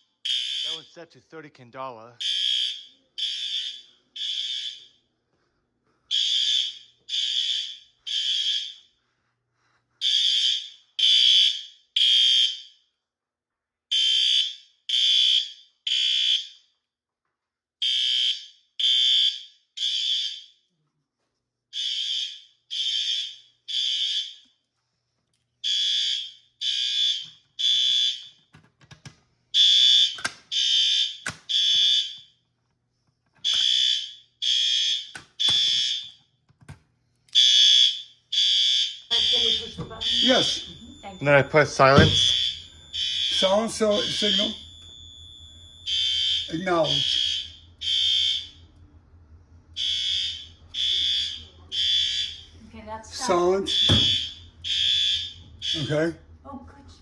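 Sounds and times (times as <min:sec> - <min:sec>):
fire alarm horn blasts: 0:00.2 - 0:01.0, 0:02.2 - 0:05.0, 0:06.1 - 0:08.9, 0:10.0 - 0:12.8, 0:13.9 - 0:16.6, 0:17.8 - 0:20.6, 0:21.8 - 0:24.5, 0:25.6 - 0:28.4, 0:29.6 - 0:32.3, 0:33.4 - 0:36.2, 0:37.4 - 0:57.0.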